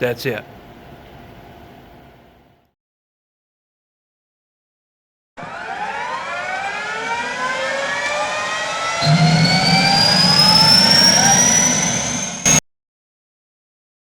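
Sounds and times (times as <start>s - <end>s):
engine speeding up: 5.4s - 12.6s.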